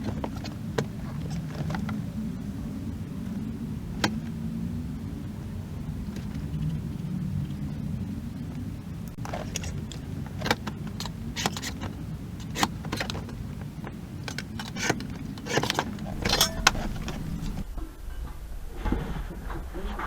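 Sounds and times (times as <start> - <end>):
steady low hum: 0.0 - 20.0
metal clinks and clatter: 9.2 - 13.4, 14.2 - 17.6.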